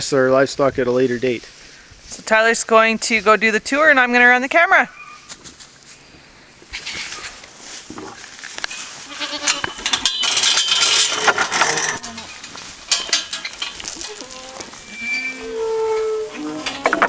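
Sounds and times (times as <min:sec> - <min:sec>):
loud rustling and crunching: 0:05.4 - 0:17.0
goats bleating: 0:08.9 - 0:09.8.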